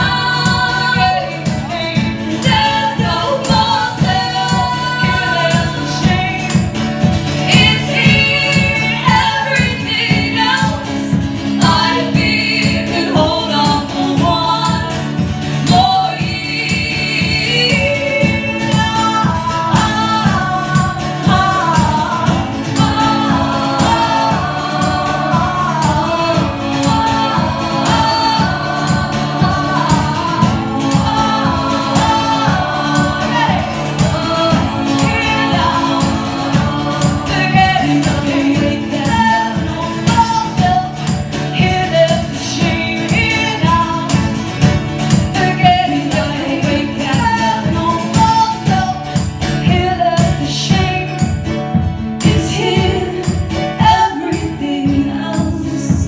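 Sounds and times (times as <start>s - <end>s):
acoustic guitar: 0.0s - 56.0s
steady drum beat: 0.0s - 56.0s
women singing in harmony: 0.0s - 56.0s.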